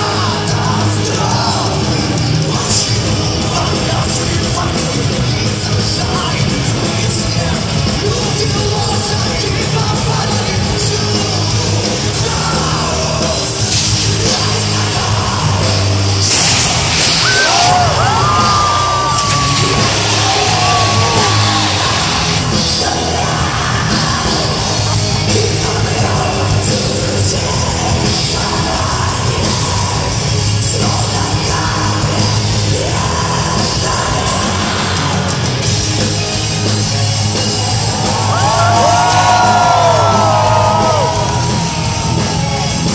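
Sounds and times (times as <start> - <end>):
heavy metal band playing: 0.0 - 42.9
person singing: 17.2 - 35.5.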